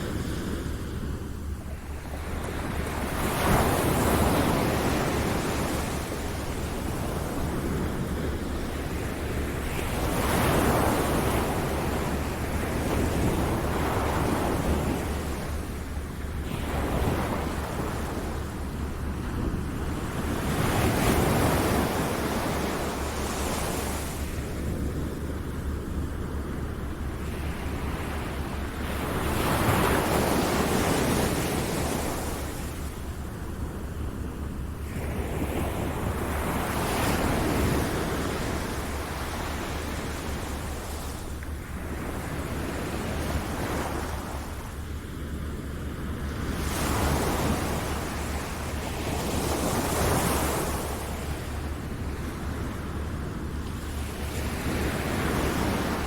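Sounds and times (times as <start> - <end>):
ocean waves breaking: 0.0 - 56.0.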